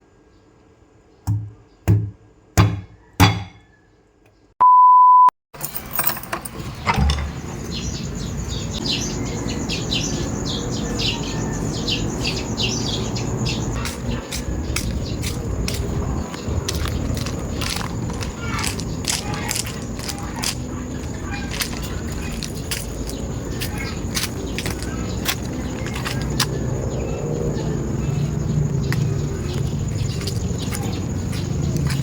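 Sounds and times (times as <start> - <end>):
electronic beep: 4.6 - 5.3.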